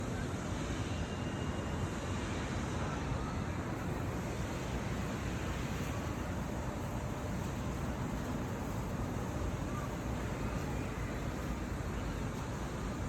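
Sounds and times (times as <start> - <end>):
low outdoor rumble: 3.7 - 13.0.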